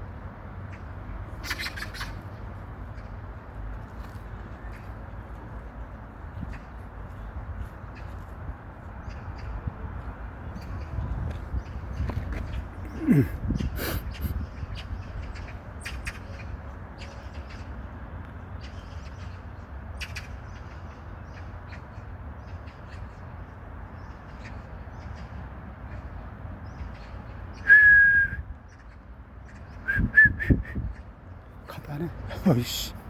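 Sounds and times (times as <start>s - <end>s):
high whistle: 27.6s - 28.5s, 29.9s - 30.8s.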